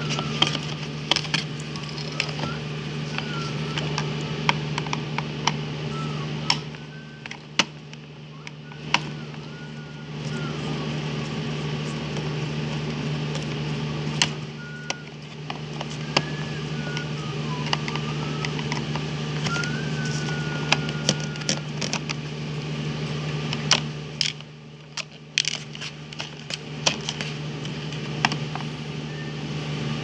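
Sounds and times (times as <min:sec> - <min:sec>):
low motor hum: 0:00.0 - 0:30.0.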